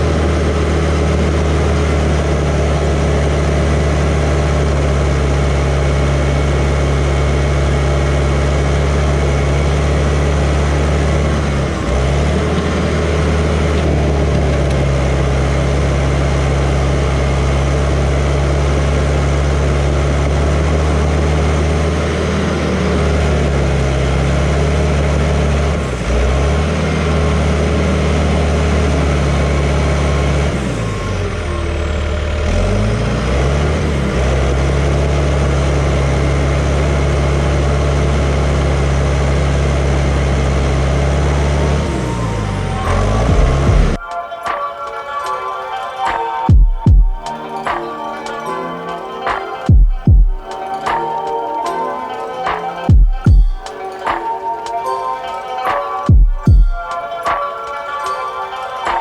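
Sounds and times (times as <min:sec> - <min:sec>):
bulldozer diesel engine running: 0:00.0 - 0:44.0.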